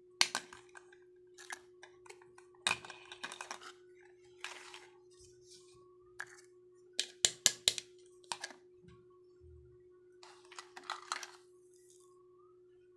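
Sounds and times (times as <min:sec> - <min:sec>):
plastic toy pieces clattering: 0:00.2 - 0:03.8, 0:10.2 - 0:11.5.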